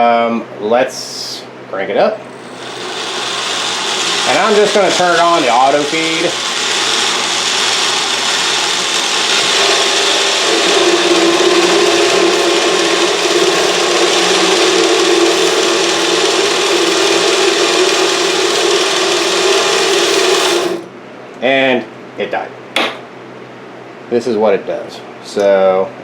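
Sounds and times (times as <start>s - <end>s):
lathe motor and cutting: 2.3s - 20.9s.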